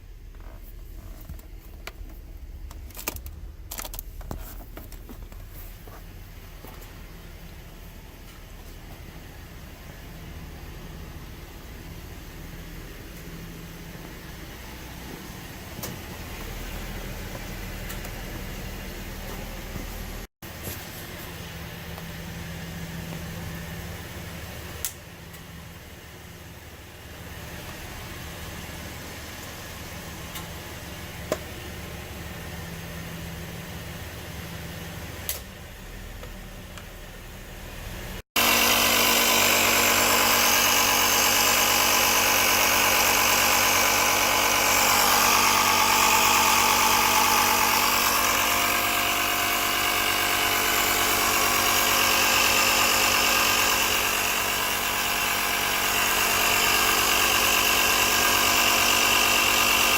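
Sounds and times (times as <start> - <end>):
piston compressor running: 38.0 - 59.9.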